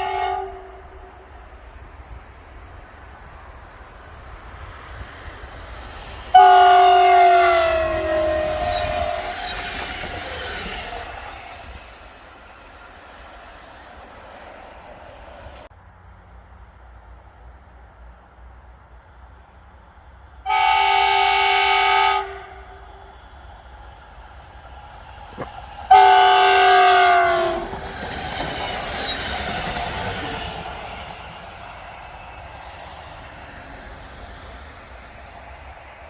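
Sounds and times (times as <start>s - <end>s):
train air horn blasts: 0.0s - 1.4s, 6.3s - 9.7s, 20.4s - 23.0s, 25.4s - 27.8s
train wheels rattling on rails: 0.0s - 36.0s.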